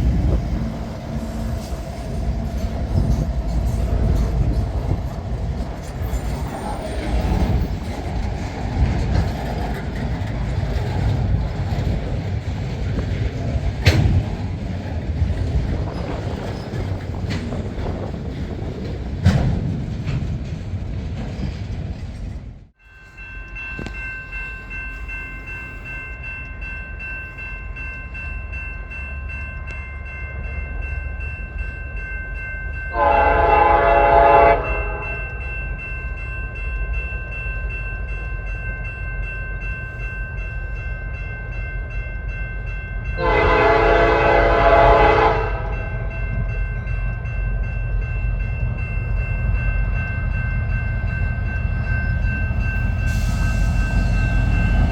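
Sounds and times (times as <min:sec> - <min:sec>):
train rumbling past: 0:00.0 - 0:54.9
locomotive horn blasts: 0:32.9 - 0:35.4, 0:43.2 - 0:46.1.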